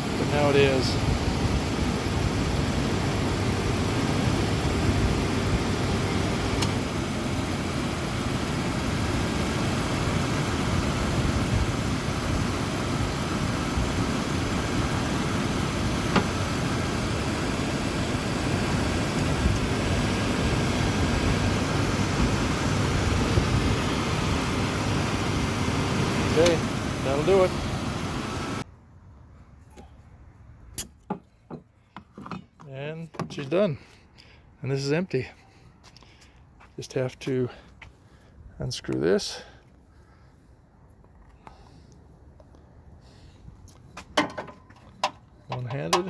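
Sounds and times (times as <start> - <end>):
car engine idling: 0.0 - 28.6.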